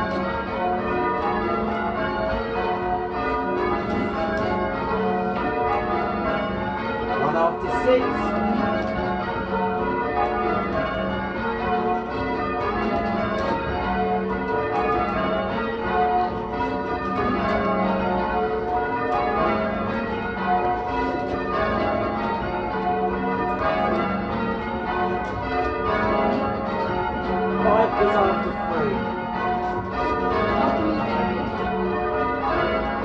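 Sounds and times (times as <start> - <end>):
church bells ringing: 0.0 - 33.0.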